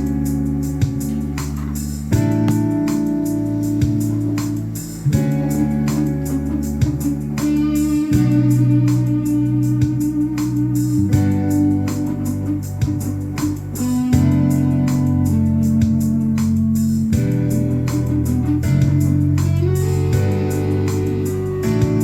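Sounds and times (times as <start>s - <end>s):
guitar playing sustained chords: 0.0s - 22.0s
steady beat: 0.0s - 22.0s.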